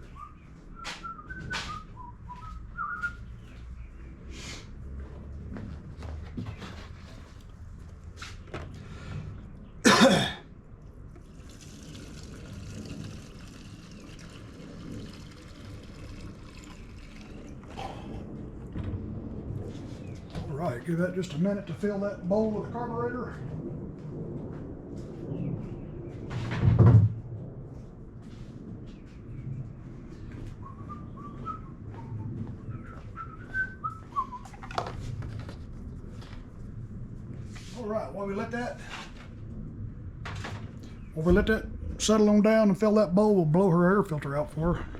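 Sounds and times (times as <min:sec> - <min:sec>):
person whistling a tune: 0:00.8 - 0:03.2
gasoline pouring into tank: 0:11.2 - 0:17.8.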